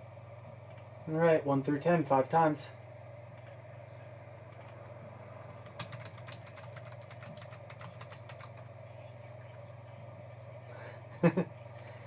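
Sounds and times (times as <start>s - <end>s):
low electrical hum: 0.0s - 12.0s
computer keyboard clicks: 5.6s - 8.6s.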